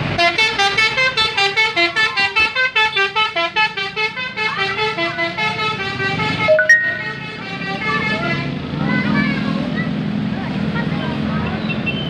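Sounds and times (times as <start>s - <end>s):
multi-note bus air horn melody: 0.1s - 8.5s.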